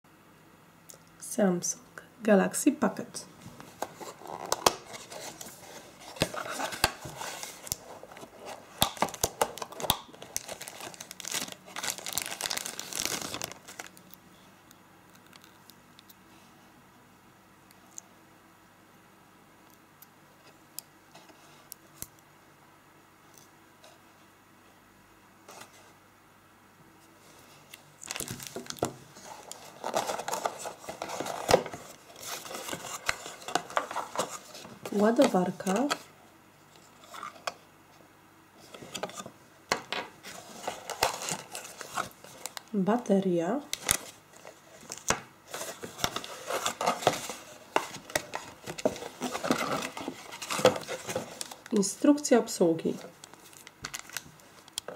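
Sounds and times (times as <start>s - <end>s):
packaging crinkling and rustling: 3.4s - 14.2s, 27.5s - 36.1s, 38.6s - 42.7s, 43.6s - 52.1s, 52.9s - 54.9s.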